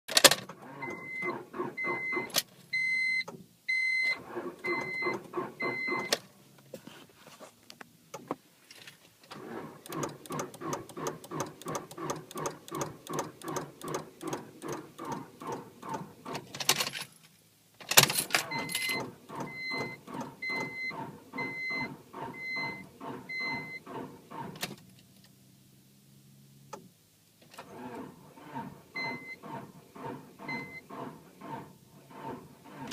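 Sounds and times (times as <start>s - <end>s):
starter cranking engine: 9.4s - 16.6s, 18.4s - 24.7s, 27.6s - 32.9s
sharp clicks: 9.8s - 16.0s.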